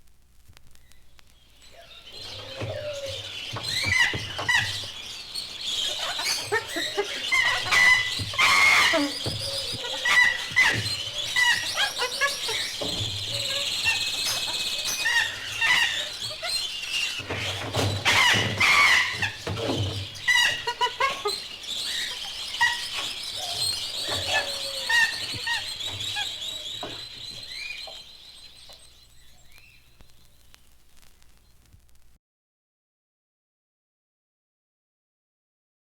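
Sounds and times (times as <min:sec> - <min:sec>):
bird chirps and trills: 0:00.8 - 0:31.6
animal squeals: 0:01.7 - 0:28.9.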